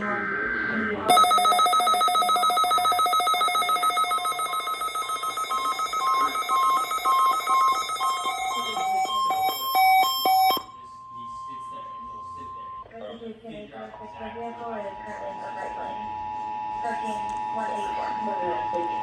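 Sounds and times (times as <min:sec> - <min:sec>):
rapidly warbling electronic alarm beep: 0:01.1 - 0:10.7.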